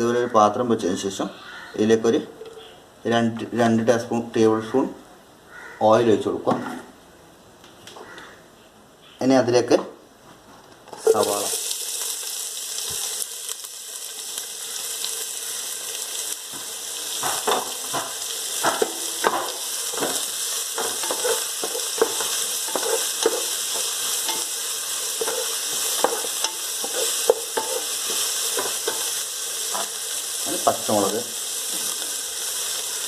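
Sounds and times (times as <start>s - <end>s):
onion sizzling in oil: 10.9s - 33.0s
utensil scraping a pan: 18.6s - 29.1s.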